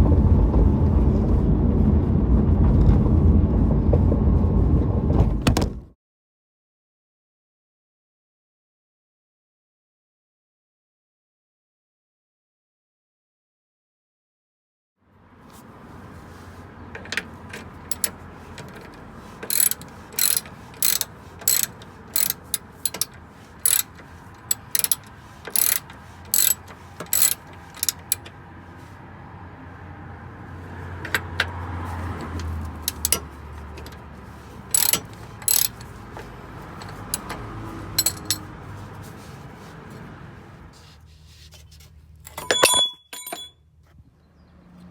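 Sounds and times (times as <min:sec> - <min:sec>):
suspension bushings creaking: 0:16.0 - 0:29.0, 0:30.7 - 0:40.6, 0:41.4 - 0:43.5.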